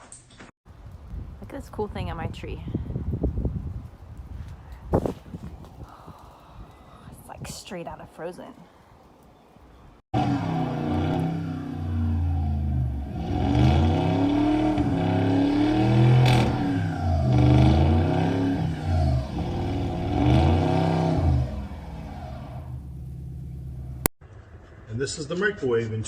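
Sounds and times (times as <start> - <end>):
vehicle engine revving: 10.2 - 24.1.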